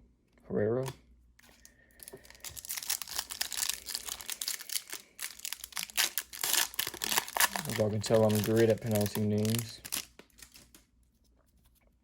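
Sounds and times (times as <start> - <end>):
plastic wrapper crinkling: 1.4 - 10.9.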